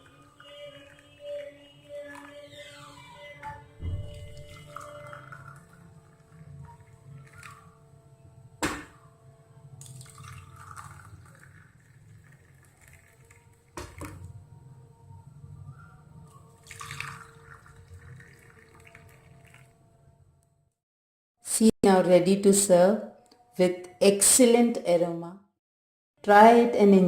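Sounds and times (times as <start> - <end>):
liquid being poured: 0.0 - 8.0, 9.8 - 14.4, 16.2 - 19.8.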